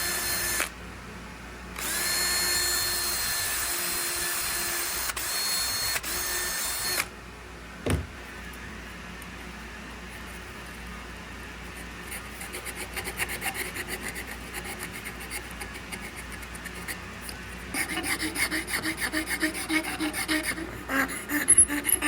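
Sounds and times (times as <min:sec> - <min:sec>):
sanding wood by hand: 0:12.1 - 0:17.1, 0:17.7 - 0:22.0.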